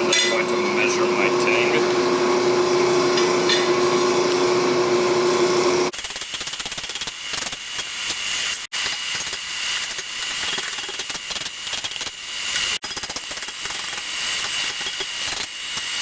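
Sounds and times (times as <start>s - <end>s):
machine hum: 0.0s - 5.9s.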